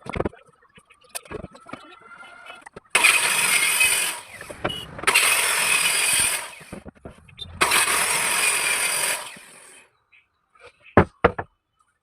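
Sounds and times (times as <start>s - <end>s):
power woodworking tool running: 3.0s - 6.8s, 7.6s - 9.8s.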